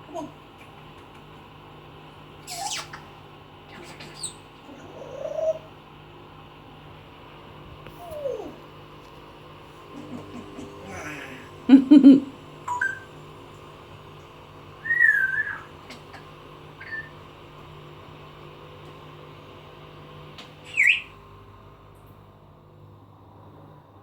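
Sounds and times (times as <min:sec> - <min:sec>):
parrot whistling: 0:02.5 - 0:03.1, 0:03.7 - 0:05.7, 0:12.6 - 0:13.2, 0:14.8 - 0:16.2, 0:16.8 - 0:17.2, 0:20.6 - 0:21.1
parrot low-pitched call: 0:03.7 - 0:05.8, 0:12.7 - 0:13.2, 0:14.8 - 0:17.2.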